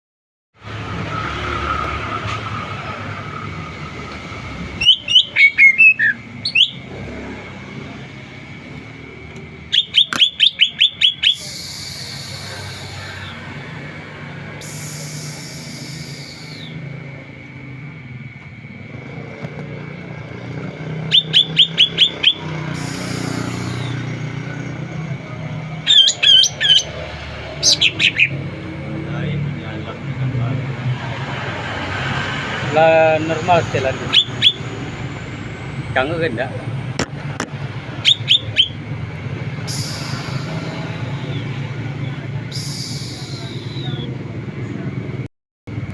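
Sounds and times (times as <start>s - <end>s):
bird harsh hissing buzzes: 11.3s - 13.6s, 14.6s - 16.8s, 22.4s - 24.4s, 39.6s - 41.3s, 42.5s - 43.8s
thin high tone: 39.7s - 41.5s.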